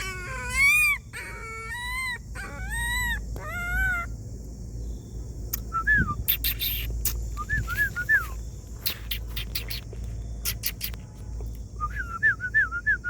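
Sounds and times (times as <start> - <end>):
dog whining: 0.0 - 4.1.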